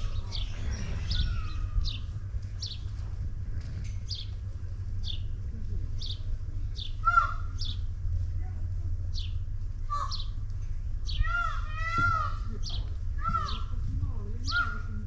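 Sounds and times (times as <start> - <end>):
lower bird call: 0.0 - 2.9, 5.0 - 7.9, 9.1 - 10.4, 11.0 - 13.8
steady low rumble: 0.0 - 15.0.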